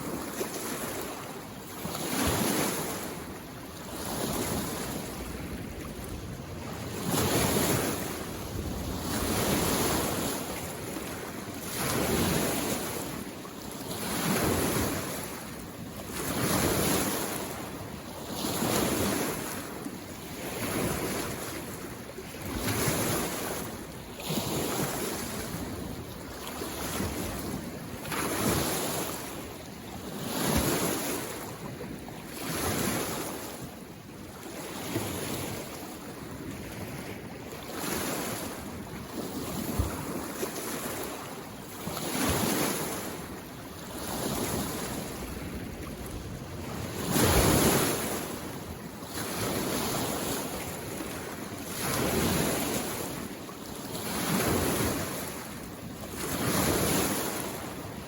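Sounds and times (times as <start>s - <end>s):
small waves lapping on shore: 0.0s - 58.0s.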